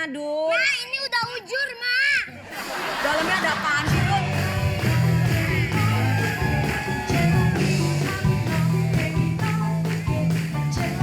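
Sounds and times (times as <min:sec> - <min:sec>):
upbeat rock music: 0:03.2 - 0:11.0.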